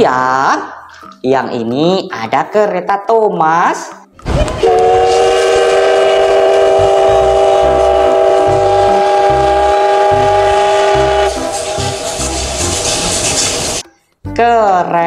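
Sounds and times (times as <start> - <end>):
train whistle chord: 4.6 - 13.9.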